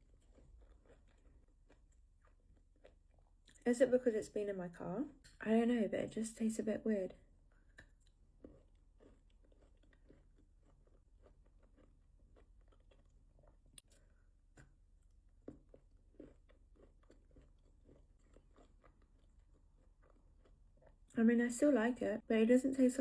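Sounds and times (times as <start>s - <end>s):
chewing crunchy chocolate: 0.0s - 3.6s, 7.4s - 21.2s.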